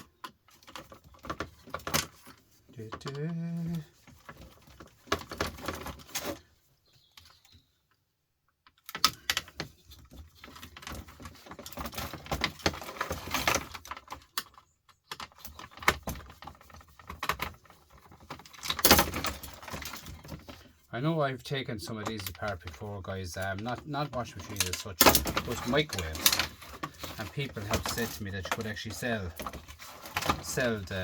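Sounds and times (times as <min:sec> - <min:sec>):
tool scraping and rattling: 0:21.9 - 0:31.0.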